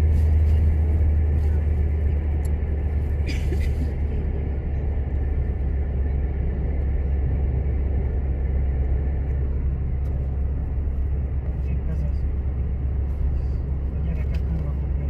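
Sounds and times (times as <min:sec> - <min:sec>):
car driving rumble from inside: 0:00.0 - 0:15.0.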